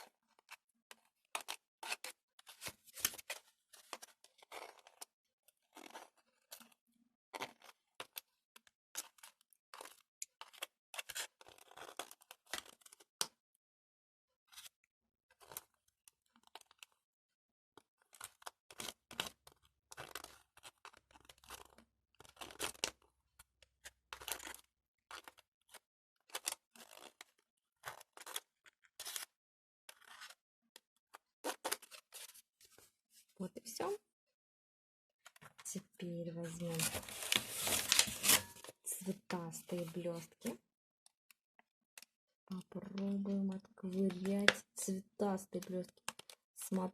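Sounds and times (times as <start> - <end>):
rustling and scraping handling noises: 31.5 - 33.4, 36.3 - 40.6.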